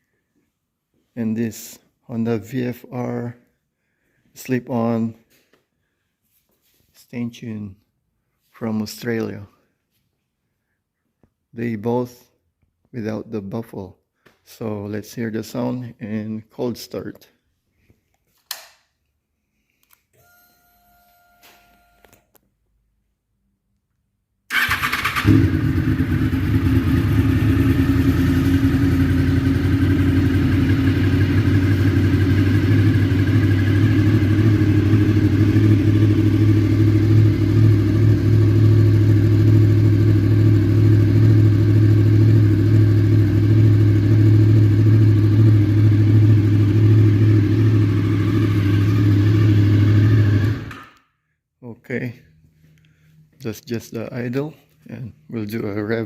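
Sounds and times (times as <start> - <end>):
engine starter spinning: 24.5 - 25.5
motorcycle engine idling: 24.5 - 50.7.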